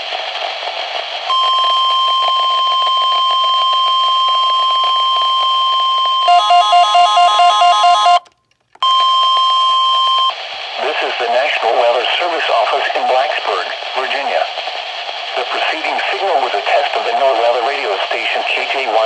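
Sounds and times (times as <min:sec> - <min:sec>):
pulsing two-pitch electronic beep: 0:01.3 - 0:08.2
steady alarm tone: 0:01.3 - 0:10.4
radio hiss: 0:09.5 - 0:19.0.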